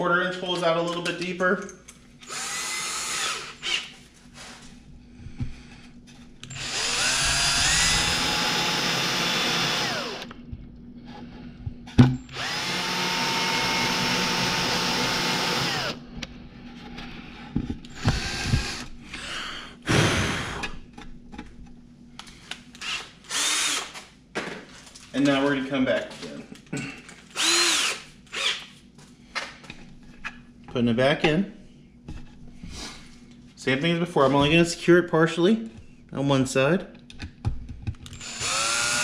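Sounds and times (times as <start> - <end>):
power drill boring with rising whine: 2.2 - 3.9, 6.4 - 10.3, 12.3 - 16.0, 17.9 - 19.6, 22.8 - 23.9, 27.4 - 28.6, 38.1 - 39.0.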